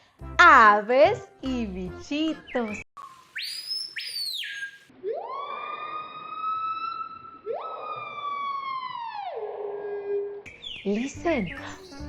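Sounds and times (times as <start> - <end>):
siren-like sliding whistle tones: 3.0 - 10.5.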